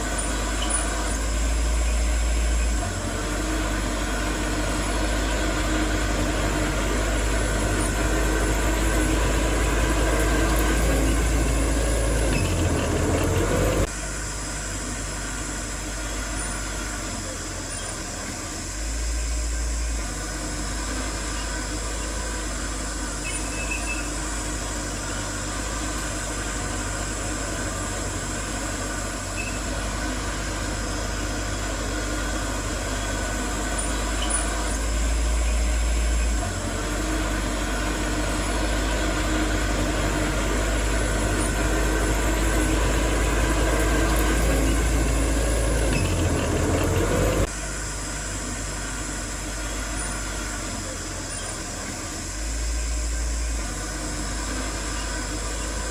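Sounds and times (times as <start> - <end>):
heavy diesel engine running: 0.0 - 55.9.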